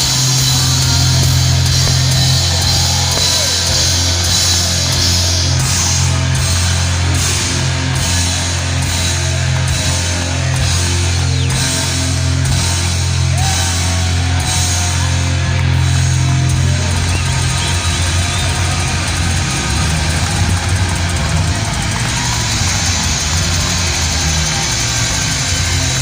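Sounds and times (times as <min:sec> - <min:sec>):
heavy metal band playing live: 0:00.0 - 0:26.0.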